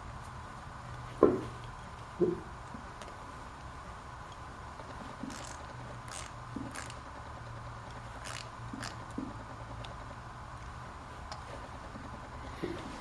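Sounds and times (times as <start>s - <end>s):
steady low hum: 0.0s - 13.0s
hand tools clicking and scraping: 4.3s - 7.0s, 7.8s - 10.0s.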